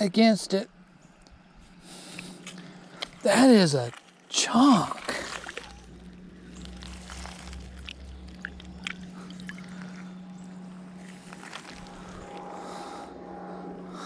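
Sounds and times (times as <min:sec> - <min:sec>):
creek water running: 0:00.0 - 0:12.6
small drips and ticks: 0:02.1 - 0:12.4.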